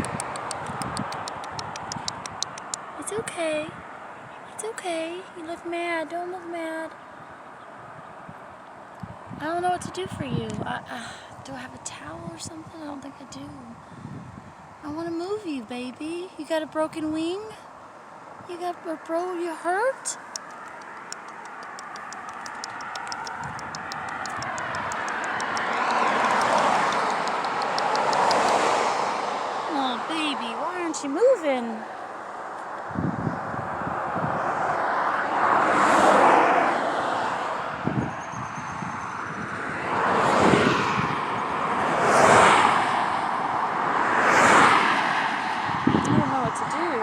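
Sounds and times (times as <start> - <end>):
fast high ticking: 0.0 - 2.9, 20.2 - 28.7
vehicle passing by: 20.0 - 47.0.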